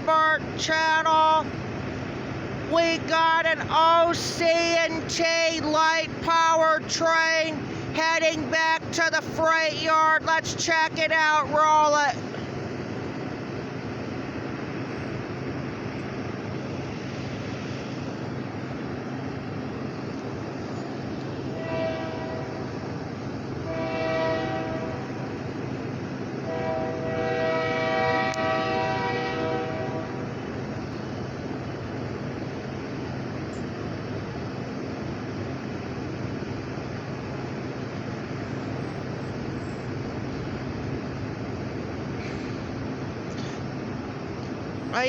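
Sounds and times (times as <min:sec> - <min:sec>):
diesel locomotive engine rumble: 0:00.0 - 0:45.0
locomotive air horn blasts: 0:21.5 - 0:22.7, 0:23.6 - 0:25.4, 0:26.4 - 0:30.4.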